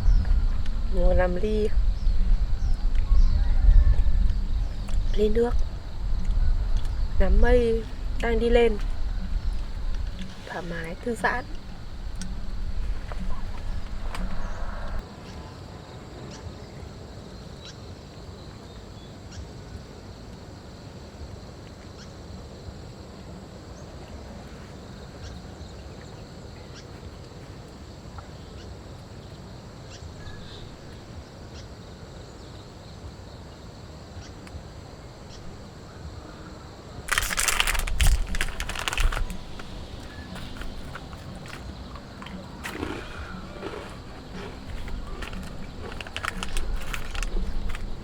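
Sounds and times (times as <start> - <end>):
outdoor ambience: 0.0 - 48.0
loud rustling crunching: 37.1 - 48.0.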